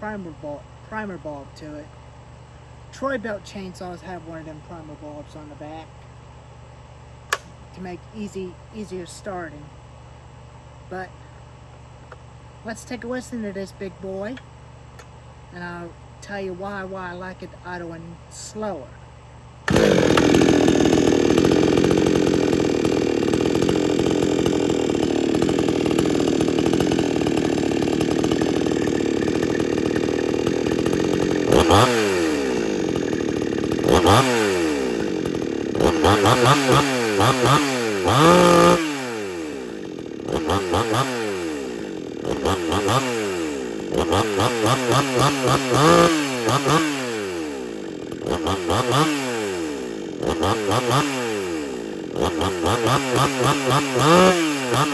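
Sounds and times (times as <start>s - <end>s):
chainsaw running and revving: 19.7s - 54.9s.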